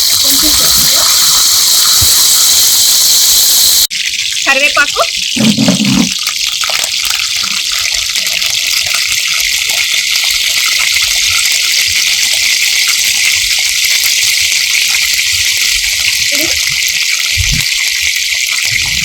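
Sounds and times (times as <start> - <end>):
leaves sizzling in hot oil: 0.0 - 19.0.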